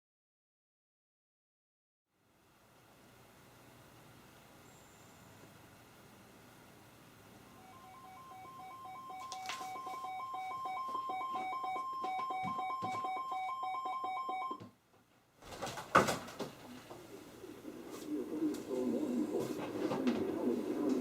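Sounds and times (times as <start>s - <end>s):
weather radio alert beeping: 7.6s - 14.7s.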